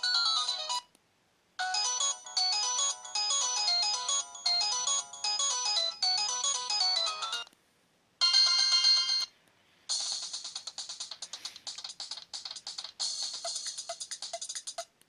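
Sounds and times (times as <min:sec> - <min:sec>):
mobile phone ringtone melody: 0:00.0 - 0:00.8, 0:01.6 - 0:07.5, 0:08.2 - 0:09.3.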